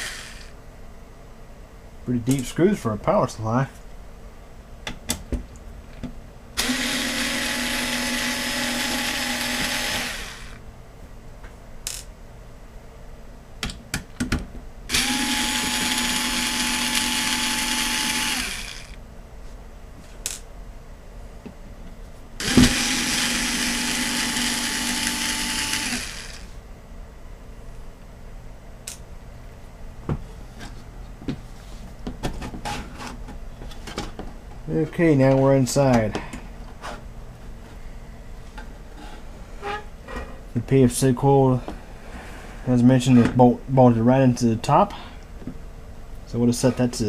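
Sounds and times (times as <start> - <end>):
electric screwdriver running: 0.0 - 0.5, 6.6 - 10.6, 14.9 - 19.0, 22.4 - 26.6.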